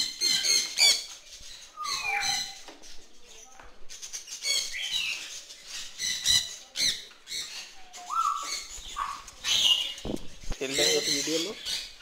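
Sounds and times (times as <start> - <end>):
parrots squawking and whistling: 0.0 - 1.1, 1.7 - 2.6, 4.4 - 10.0.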